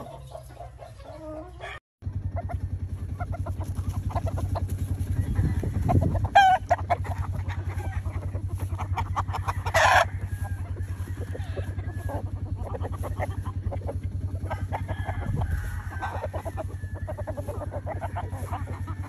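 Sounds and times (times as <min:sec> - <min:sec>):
rooster crowing: 0:00.0 - 0:02.7, 0:05.0 - 0:06.8, 0:09.1 - 0:12.7, 0:14.4 - 0:19.0
chickens clucking: 0:00.0 - 0:19.0
low pulsing hum: 0:00.0 - 0:19.0.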